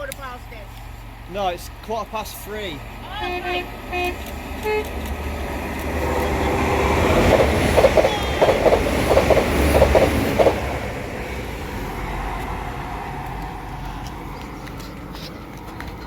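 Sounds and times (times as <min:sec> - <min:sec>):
train wheels clattering: 0:04.0 - 0:11.5.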